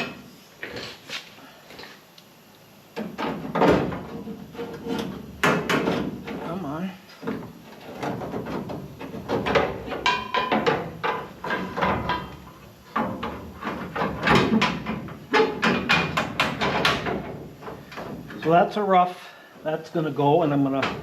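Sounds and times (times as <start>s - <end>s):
sheet metal knocking and clattering: 3.0s - 6.4s, 7.2s - 18.3s.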